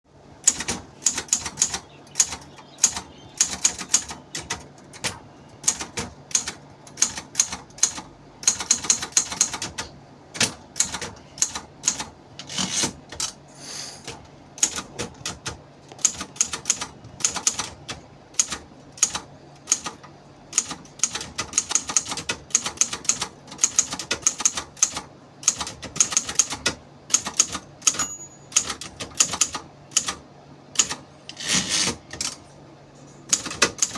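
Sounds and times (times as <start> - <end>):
typewriter key strikes: 0.4 - 13.4, 18.4 - 30.2, 33.3 - 33.9.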